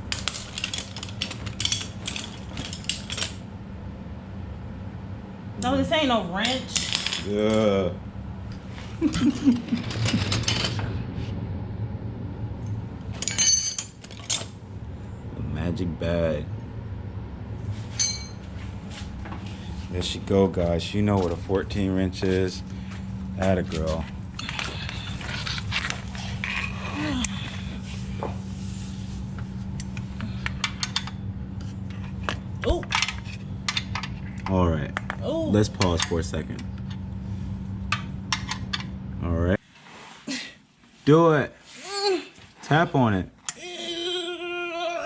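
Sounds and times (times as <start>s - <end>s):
steady low hum: 0.0s - 45.0s
metal tools clinking: 0.1s - 3.4s, 13.2s - 14.5s, 17.9s - 18.4s, 23.6s - 27.5s.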